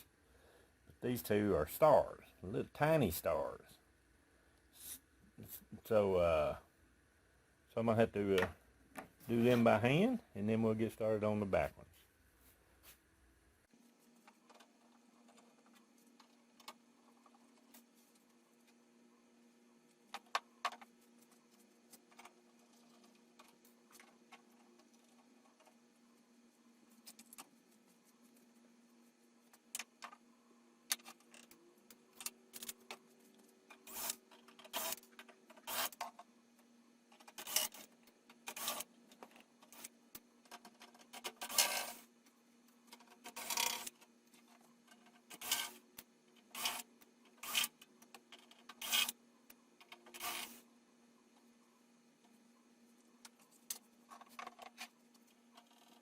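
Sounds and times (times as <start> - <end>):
screwdriver scraping strokes: 33.7 - 36.0, 46.4 - 47.8, 48.7 - 49.2, 50.1 - 50.6.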